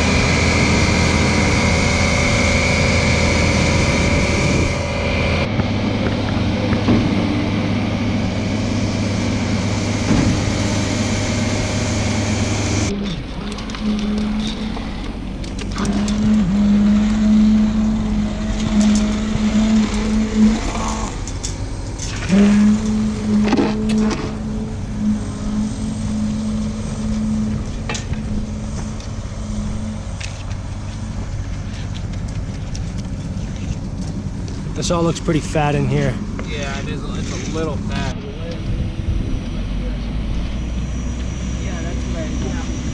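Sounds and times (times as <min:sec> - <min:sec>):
construction machinery diesel engine: 0:00.0 - 0:42.9
low machine drone: 0:00.0 - 0:42.9
knocks and clanks: 0:05.4 - 0:07.6, 0:10.0 - 0:10.6.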